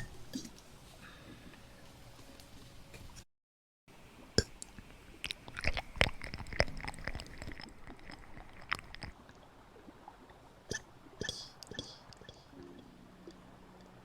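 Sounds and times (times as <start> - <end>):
wet mouth clicks: 4.4 - 9.2, 10.7 - 12.8
crisp crunches of eating: 5.2 - 9.2.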